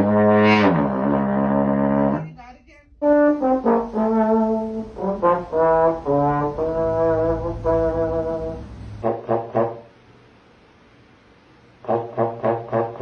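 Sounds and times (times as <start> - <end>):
brass instrument playing notes: 0.0 - 9.9, 11.8 - 13.0.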